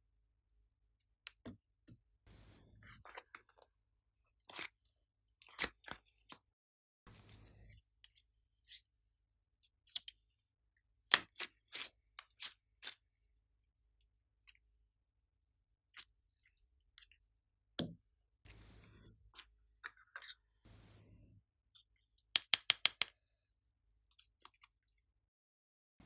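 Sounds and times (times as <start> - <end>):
slime sticky clicks and pops: 22.4 - 23.1.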